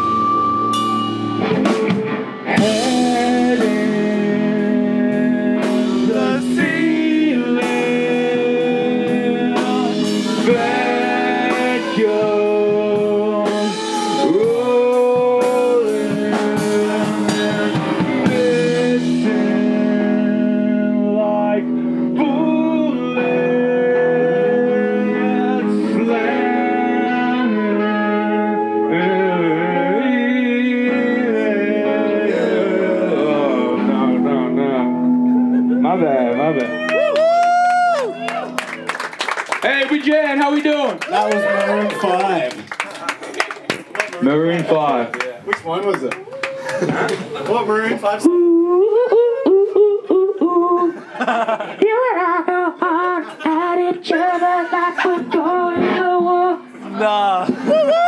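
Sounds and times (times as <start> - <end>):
drums and cymbals: 0.0 - 8.4, 9.0 - 19.7
bass guitar: 0.0 - 39.3
electric guitars: 0.0 - 39.6
person singing: 1.6 - 38.8, 48.2 - 58.0.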